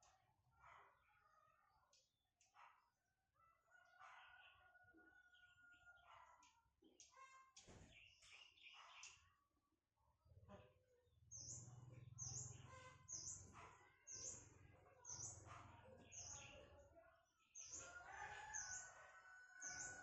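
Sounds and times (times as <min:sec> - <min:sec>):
small bird chirping: 0:11.3 - 0:16.7, 0:19.6 - 0:20.0.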